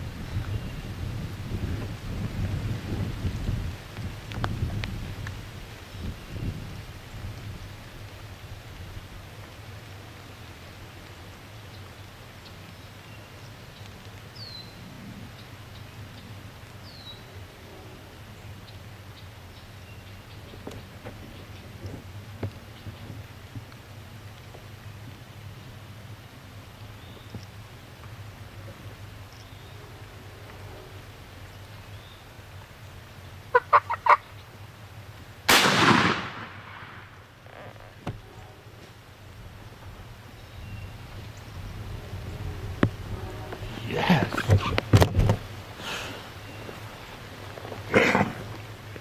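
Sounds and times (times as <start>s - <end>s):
turkey gobbling: 33.5s - 34.3s
shotgun blast: 35.5s - 37.2s.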